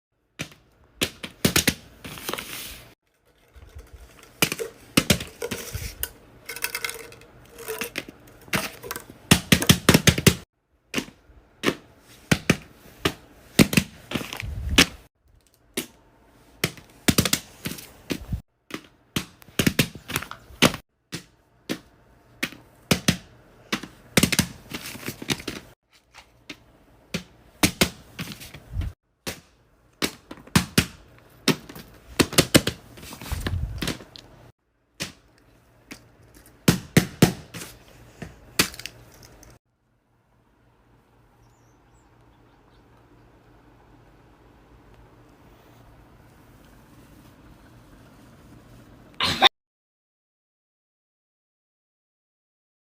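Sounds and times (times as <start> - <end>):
crinkling and crackling: 2.1 - 9.2, 37.6 - 39.6.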